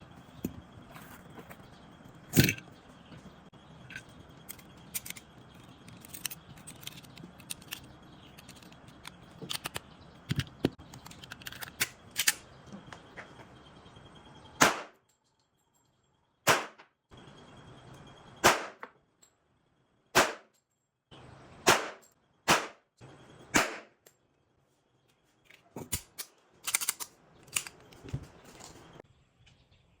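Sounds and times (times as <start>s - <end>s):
pistol shots: 14.6s - 15.0s, 16.5s - 16.8s, 18.4s - 18.8s, 20.2s - 20.5s, 21.6s - 22.8s, 23.5s - 24.0s.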